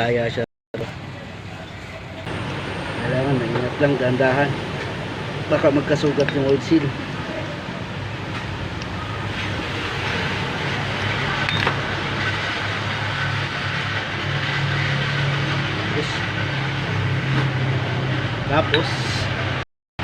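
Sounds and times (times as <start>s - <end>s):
noisy hiss: 2.3s - 16.6s.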